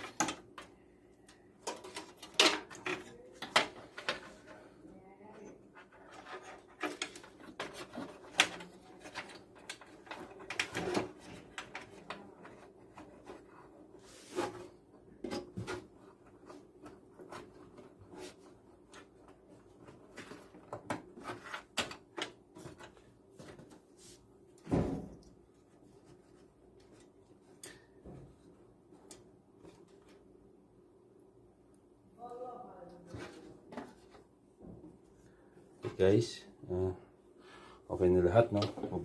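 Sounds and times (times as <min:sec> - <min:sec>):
cables and plastic connectors rattling: 0:00.0 - 0:04.6, 0:05.7 - 0:13.5.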